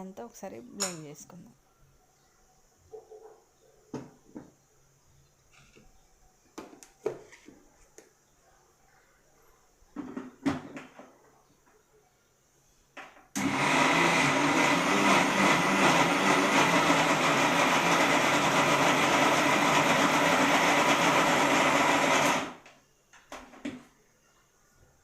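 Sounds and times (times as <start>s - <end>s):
mixer grinder running: 13.4s - 22.6s.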